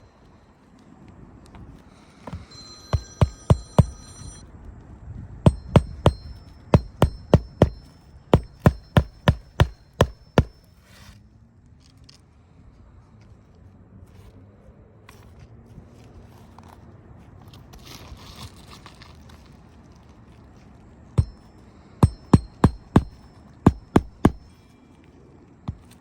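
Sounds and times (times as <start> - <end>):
hammer driving nails: 2.3 - 4.2, 5.5 - 10.6, 21.2 - 21.4, 22.0 - 24.5.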